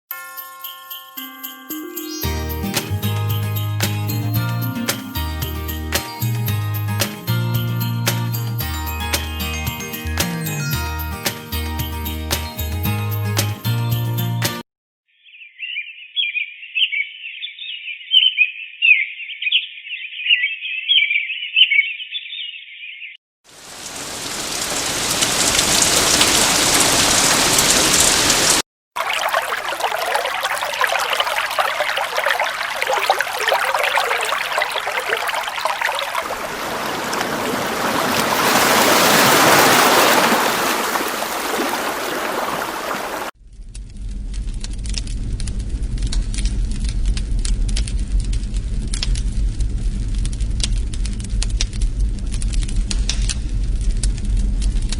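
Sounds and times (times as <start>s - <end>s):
high chirping: 1.9s - 2.8s
rain-like hiss: 23.5s - 43.3s.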